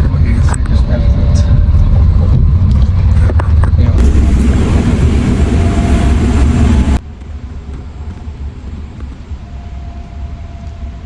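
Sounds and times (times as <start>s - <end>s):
vehicle rumble: 1.5s - 9.3s.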